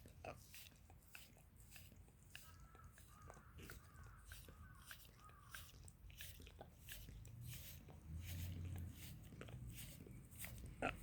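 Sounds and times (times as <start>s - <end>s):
dog licking: 0.0s - 11.0s.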